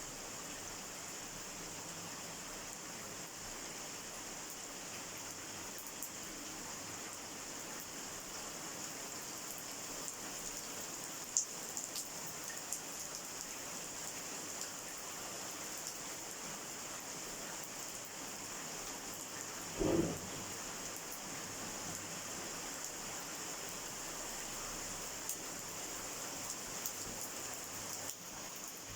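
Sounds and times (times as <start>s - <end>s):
steady rain falling: 0.0s - 28.9s
raindrops ticking close by: 9.4s - 14.8s, 25.0s - 28.9s.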